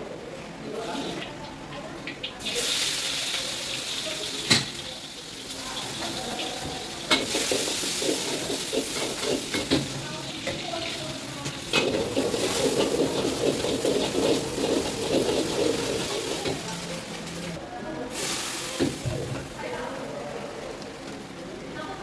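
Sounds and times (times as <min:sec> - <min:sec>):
food sizzling in a wok: 0:00.8 - 0:19.9
metal ladle scraping a pan: 0:11.6 - 0:16.6.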